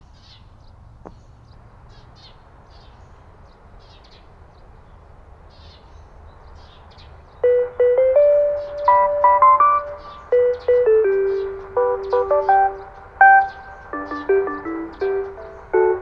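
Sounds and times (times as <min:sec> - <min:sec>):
small birds chirping: 0:00.0 - 0:16.0
loudspeaker electronic chime: 0:07.4 - 0:14.4.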